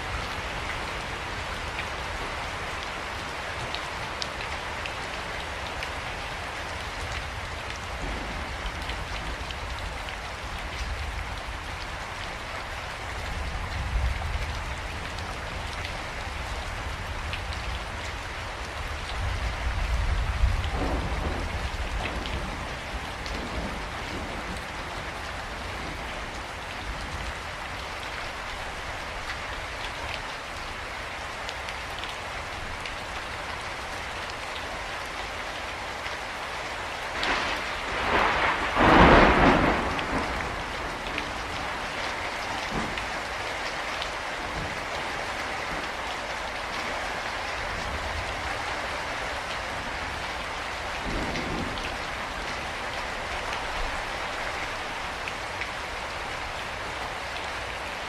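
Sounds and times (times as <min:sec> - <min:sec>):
steady rain falling: 0:00.0 - 0:58.0
thunderclap: 0:20.1 - 0:22.6, 0:37.1 - 0:41.8
thunder rolling: 0:20.4 - 0:24.7, 0:37.1 - 0:41.8.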